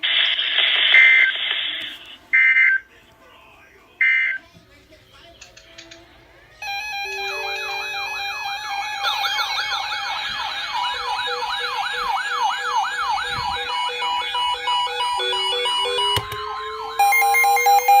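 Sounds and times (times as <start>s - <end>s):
siren slow rising wail: 6.6s - 17.2s
electronic siren yelp: 6.6s - 18.0s
stuttering high-pitched siren: 6.6s - 18.0s.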